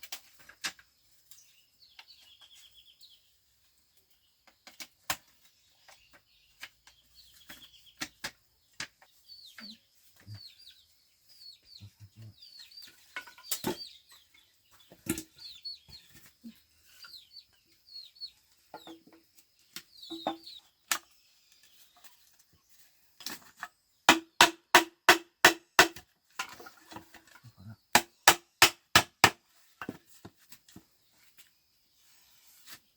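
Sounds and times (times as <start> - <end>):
chickens clucking: 6.9 - 20.8.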